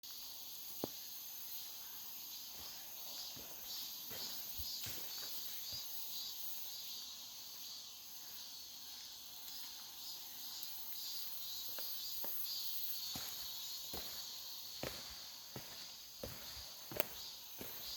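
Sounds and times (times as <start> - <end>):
insects chirring: 0.0 - 17.9
footsteps crunching on a trail: 2.4 - 6.0, 11.7 - 17.9.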